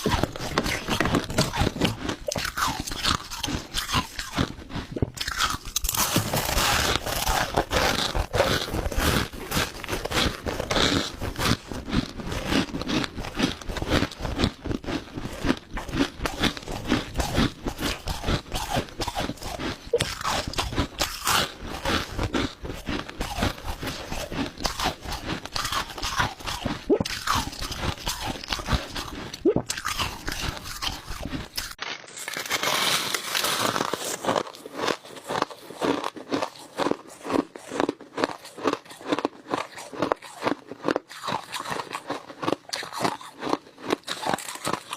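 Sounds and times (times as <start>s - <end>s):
crushed ice being chewed: 0.0s - 44.9s.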